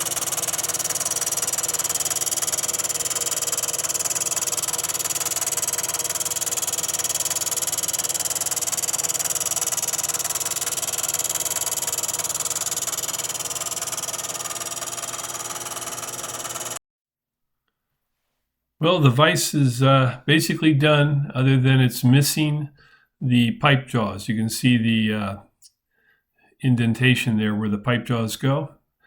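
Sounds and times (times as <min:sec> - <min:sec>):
milling machine cutting metal: 0:00.0 - 0:16.8.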